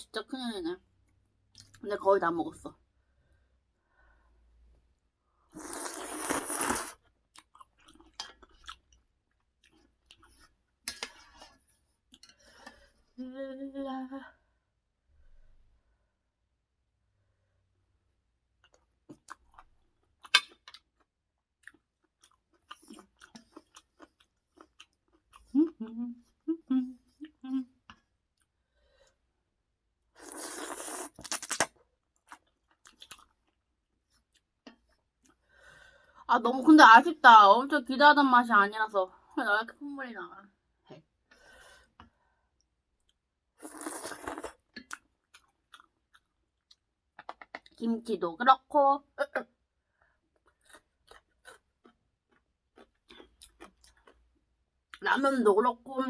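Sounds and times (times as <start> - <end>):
loud bite: 5.6 - 7.0, 30.2 - 31.7
person chewing food: 5.6 - 12.8, 18.6 - 25.8, 30.2 - 35.4, 43.0 - 47.8, 50.4 - 55.0
crunching chews: 18.6 - 25.5, 50.4 - 54.2.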